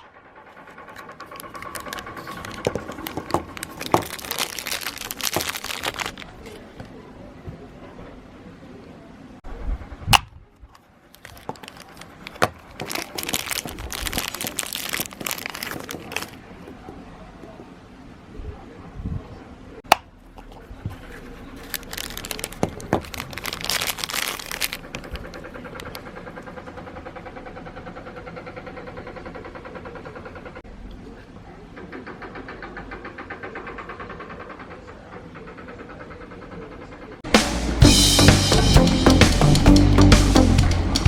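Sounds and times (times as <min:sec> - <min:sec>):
plastic wrappers crinkling: 0:00.6 - 0:07.0, 0:11.1 - 0:17.0, 0:20.4 - 0:26.1
plastic capsules snapping open: 0:01.3 - 0:06.3
steady rhythmic hum: 0:37.2 - 0:41.0.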